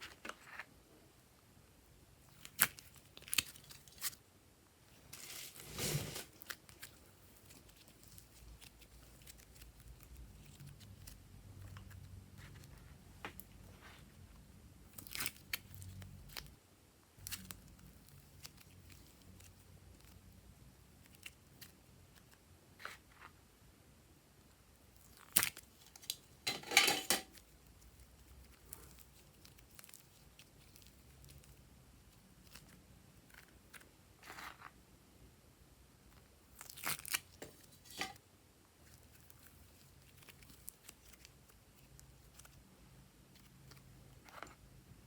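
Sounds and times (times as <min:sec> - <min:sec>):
slime clicking and crackling: 0:02.2 - 0:04.2, 0:06.4 - 0:12.1, 0:14.9 - 0:16.6, 0:17.2 - 0:22.4, 0:24.8 - 0:26.4, 0:27.3 - 0:33.8, 0:36.4 - 0:37.8, 0:38.8 - 0:42.6.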